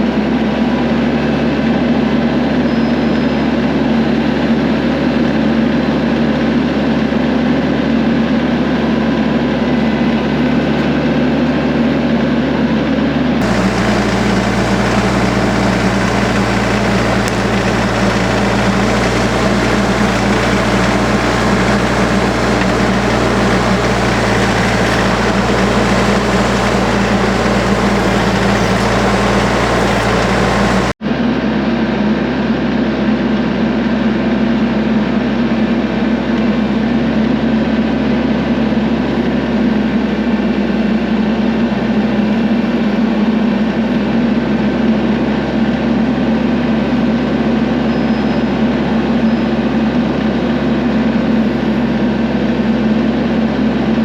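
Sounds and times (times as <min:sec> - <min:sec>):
engine running steadily: 0:13.4 - 0:31.0.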